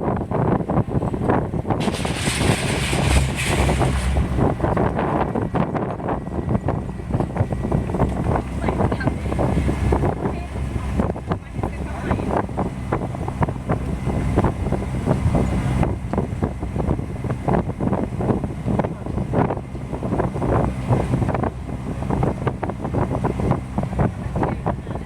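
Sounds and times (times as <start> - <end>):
vehicle engine running: 0.0 - 25.0
wind buffeting microphone: 0.0 - 25.0
voices: 4.8 - 14.8, 23.8 - 25.0.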